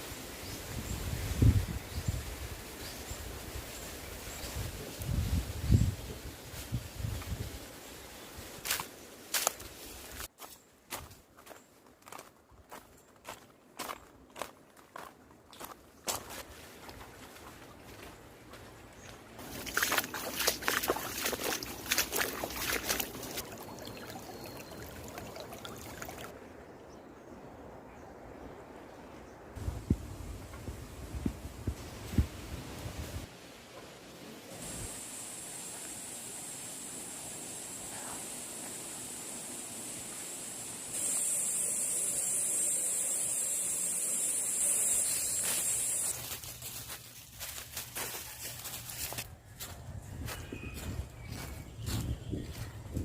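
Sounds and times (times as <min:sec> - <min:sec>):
water sloshing and trickling: 0:19.4 - 0:26.8
water splashes: 0:19.4 - 0:26.8
dull background hiss: 0:29.6 - 0:46.2
high-pitched insect drone: 0:34.6 - 0:46.2.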